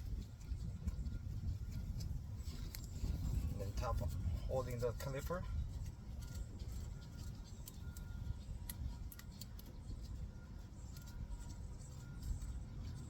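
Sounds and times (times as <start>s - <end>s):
steady low rumble: 0.0s - 13.0s.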